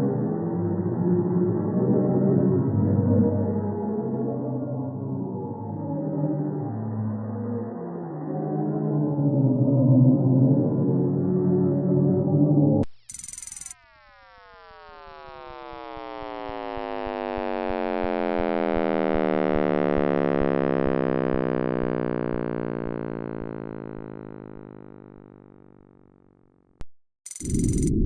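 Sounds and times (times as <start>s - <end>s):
electronic tones sliding downward: 8.4s - 25.6s, 27.3s - 28.0s
click: 12.8s - 13.8s
faint regular ticks: 12.8s - 19.2s, 20.9s - 26.2s, 27.3s - 28.0s.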